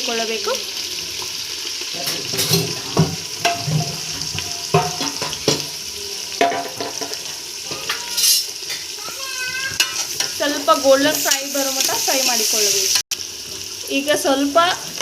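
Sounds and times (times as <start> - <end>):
onions sizzling in hot oil: 0.0 - 15.0
metal spoon scraping a pot: 2.1 - 5.6.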